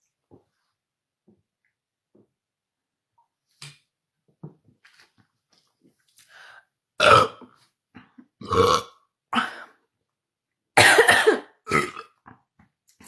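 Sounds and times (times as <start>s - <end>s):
woman burping: 7.0s - 7.4s, 8.4s - 9.7s, 10.8s - 12.2s.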